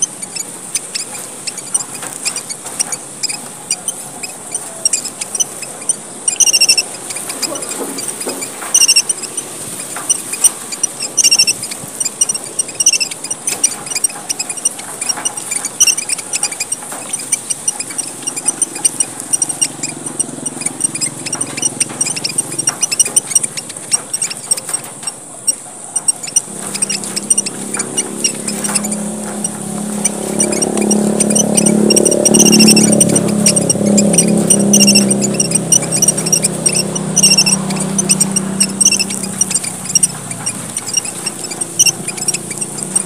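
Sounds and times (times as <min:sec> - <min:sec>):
falling bird call notes: 0:00.0 - 0:43.0
finches chattering: 0:00.0 - 0:43.0.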